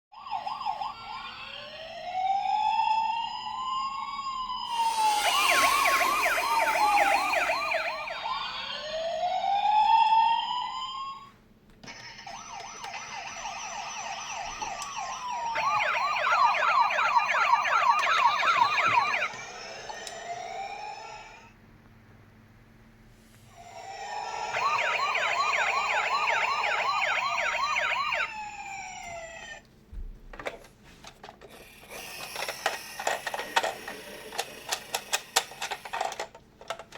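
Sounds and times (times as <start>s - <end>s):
toy electronic siren: 0.2s - 11.3s, 11.9s - 21.6s, 23.6s - 29.6s, 31.5s - 36.2s
hiss: 4.7s - 7.8s, 31.5s - 36.1s.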